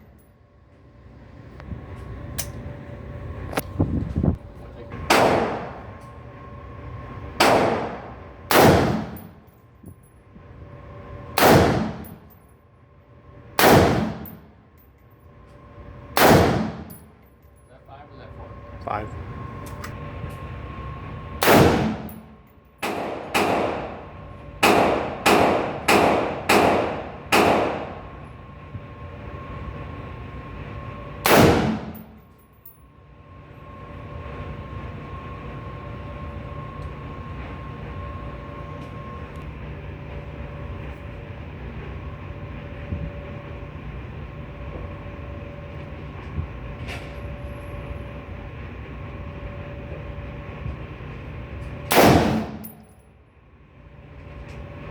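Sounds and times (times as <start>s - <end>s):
steady hum: 0.0s - 54.9s
gunshots with ringing tail: 5.0s - 6.0s, 7.4s - 9.4s, 11.4s - 12.2s, 13.6s - 14.4s, 16.2s - 17.0s, 21.4s - 28.2s, 31.2s - 32.2s, 51.9s - 52.8s.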